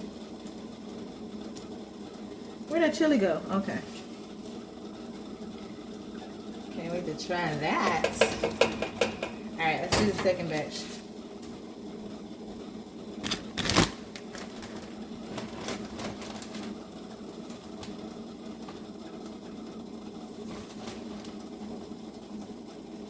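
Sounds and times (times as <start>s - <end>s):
sharp clattering knocks: 7.8s - 10.3s.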